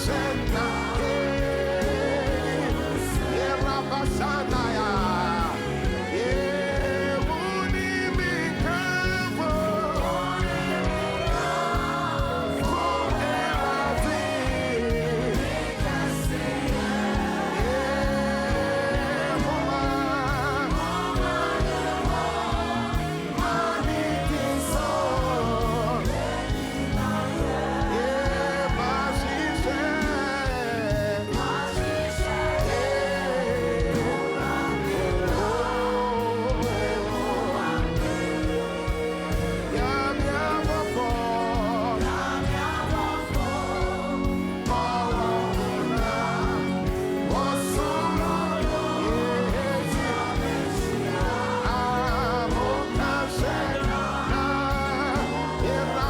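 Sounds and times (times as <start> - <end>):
instrumental backing: 0.0 - 56.0
voices singing: 0.0 - 56.0.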